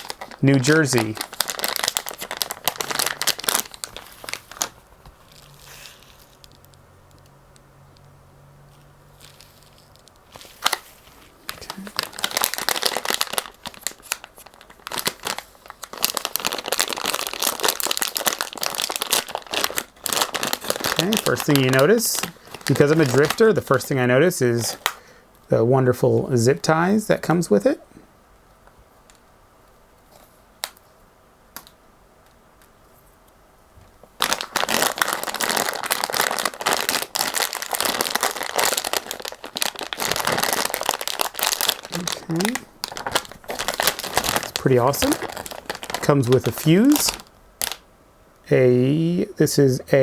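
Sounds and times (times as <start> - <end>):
plastic packaging crinkling: 0.0 - 7.3, 8.7 - 25.0, 33.9 - 47.9.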